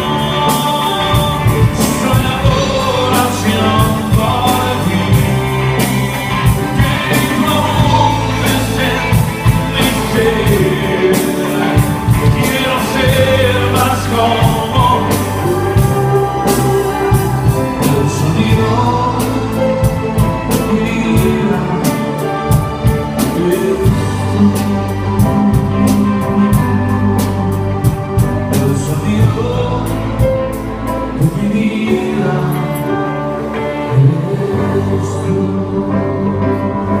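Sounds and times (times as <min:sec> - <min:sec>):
drum beat: 0:00.0 - 0:20.6
bass line: 0:00.0 - 0:37.0
person singing over a band: 0:00.0 - 0:37.0.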